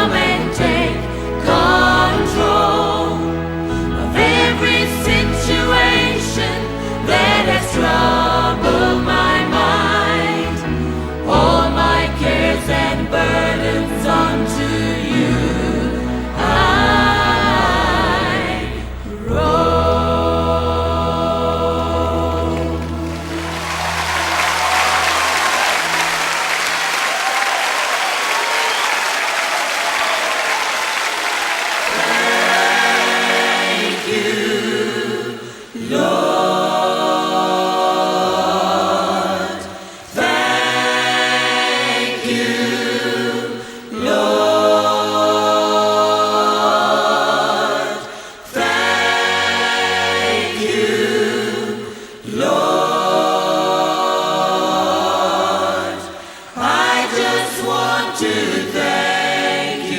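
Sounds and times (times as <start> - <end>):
choir singing worship music: 0.0 - 59.9
applause: 22.6 - 34.0.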